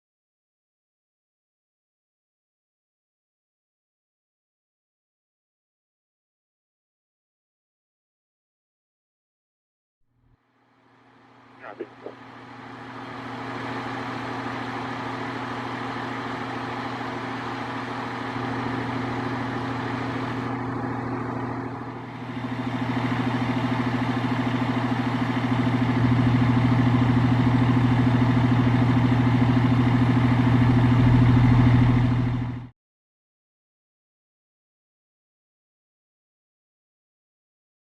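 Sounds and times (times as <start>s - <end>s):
diesel engine deep drone: 11.2s - 32.7s.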